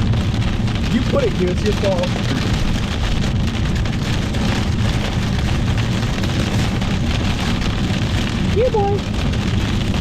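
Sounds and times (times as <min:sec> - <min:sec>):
heavy rain hitting a car: 0:00.0 - 0:10.0
road noise: 0:00.0 - 0:10.0.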